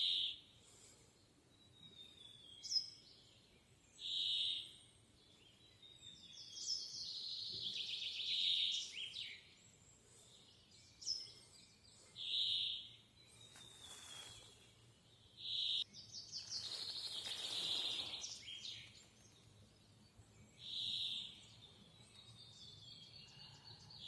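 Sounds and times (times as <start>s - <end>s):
other bird calls: 15.4s - 19.0s
high falling bird whistles: 16.4s - 18.8s.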